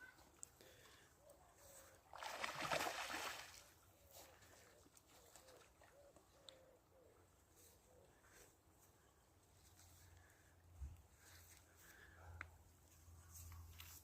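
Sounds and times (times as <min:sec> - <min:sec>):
water splash: 0:02.1 - 0:03.6.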